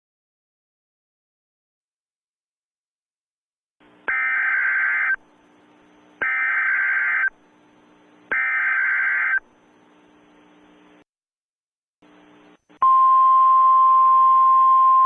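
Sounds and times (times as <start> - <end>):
faint hum and hiss: 3.8 - 11.0, 12.0 - 13.0
digital data tone bursts: 4.1 - 5.2, 6.2 - 7.4, 8.3 - 9.4.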